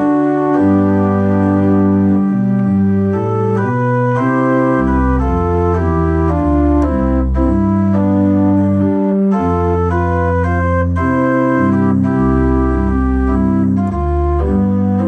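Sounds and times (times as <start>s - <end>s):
church organ chords: 0.0s - 15.0s
deep organ bass notes: 0.0s - 15.0s.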